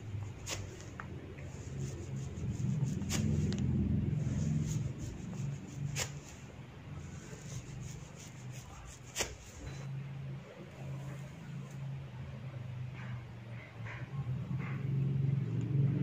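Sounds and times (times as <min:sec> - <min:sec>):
low hum: 0:00.0 - 0:08.8.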